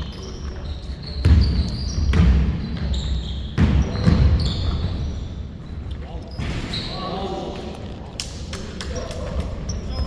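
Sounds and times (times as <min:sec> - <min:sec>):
basketball bouncing on court floor: 0:01.0 - 0:05.2.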